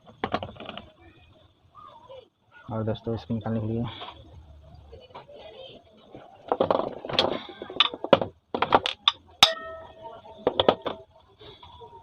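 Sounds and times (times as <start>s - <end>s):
metallic knocks and clatter: 6.5s - 11.0s
metal ringing tone: 9.4s - 10.5s.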